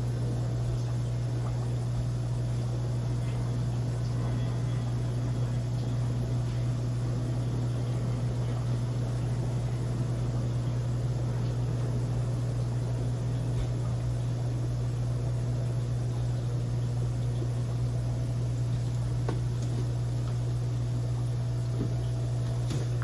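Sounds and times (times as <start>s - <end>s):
low electrical hum with hiss: 0.0s - 23.0s.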